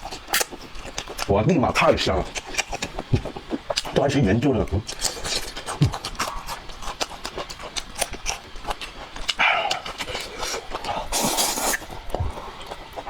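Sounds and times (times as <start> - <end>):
food crunching while chewed: 0.0 - 13.0.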